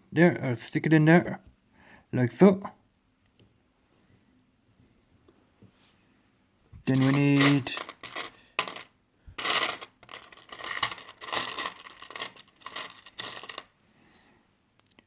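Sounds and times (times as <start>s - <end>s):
plastic pieces clattering: 6.9s - 13.7s.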